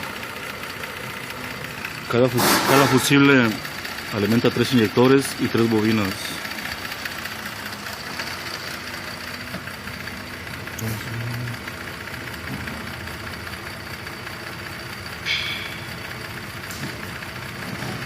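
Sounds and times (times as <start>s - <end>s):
car engine idling with misfire: 0.0s - 18.0s.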